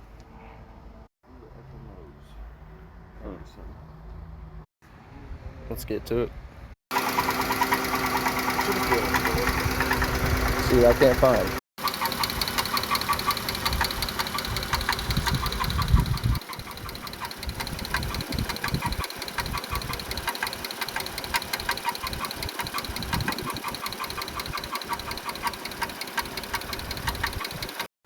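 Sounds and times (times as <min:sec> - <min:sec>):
car engine ticking knock: 0:06.9 - 0:27.9.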